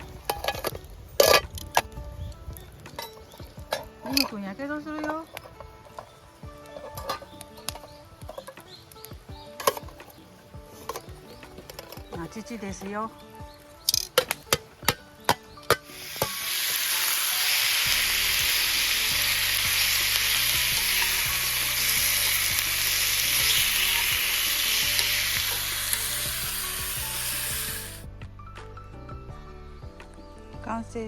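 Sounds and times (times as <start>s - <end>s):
pork sizzling in a pan: 15.7s - 28.0s.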